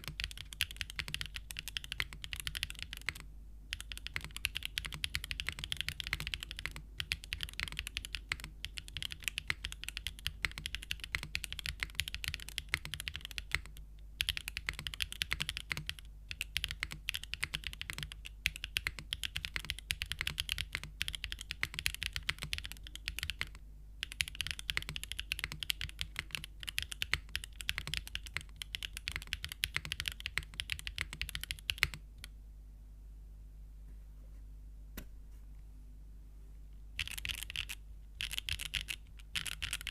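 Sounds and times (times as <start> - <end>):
mechanical keyboard typing: 0.0 - 32.3, 37.0 - 39.9.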